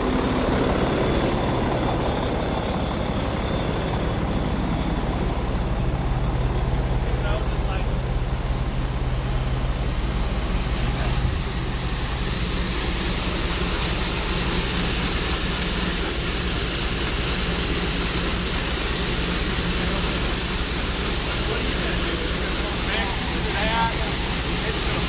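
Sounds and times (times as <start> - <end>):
machinery low hum: 0.0 - 25.0
machinery high hiss: 10.6 - 25.0.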